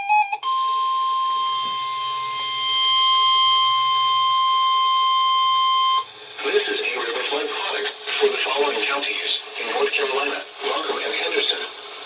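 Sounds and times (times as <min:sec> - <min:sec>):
steady high alert tone: 0:00.5 - 0:06.1.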